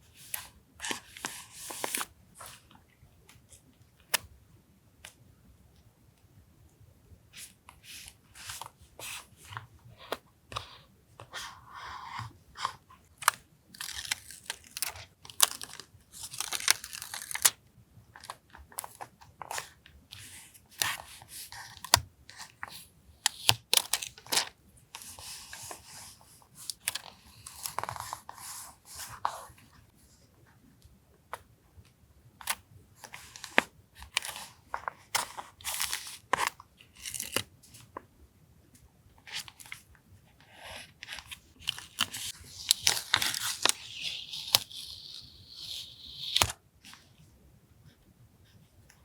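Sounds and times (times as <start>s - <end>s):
paper rustling and tearing: 41.1s - 46.5s.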